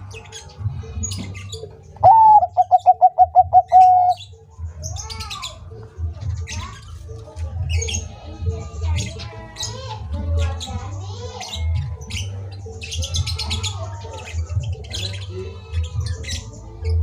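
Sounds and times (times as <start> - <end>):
dove singing: 0.0 - 17.0
small birds chirping: 0.0 - 17.0
dove cooing: 2.0 - 4.2.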